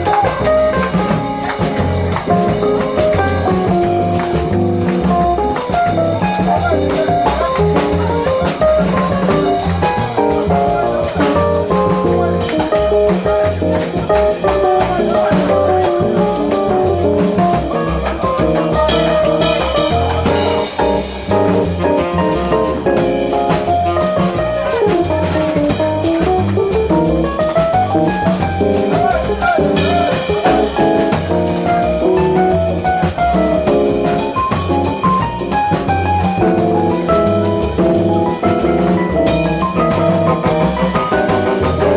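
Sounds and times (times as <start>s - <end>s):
drum kit: 0.0s - 41.9s.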